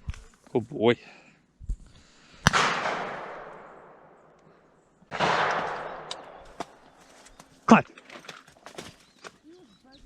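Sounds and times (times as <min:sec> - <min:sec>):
shotgun shots with echo: 0:02.4 - 0:04.2, 0:05.1 - 0:06.4.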